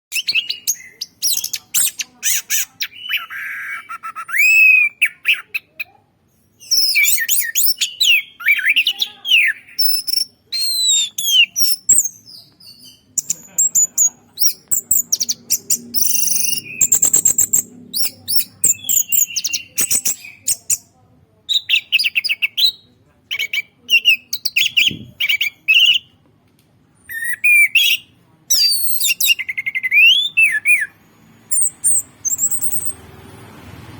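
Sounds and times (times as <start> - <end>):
songbird singing: 0.1 - 6.0, 6.6 - 20.9, 21.5 - 26.1, 27.0 - 33.2.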